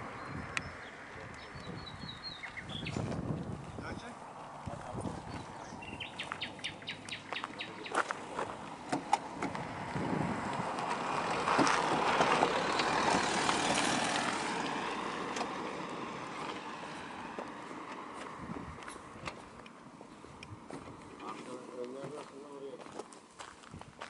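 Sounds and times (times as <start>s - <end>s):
vehicle driving past: 4.1s - 21.6s.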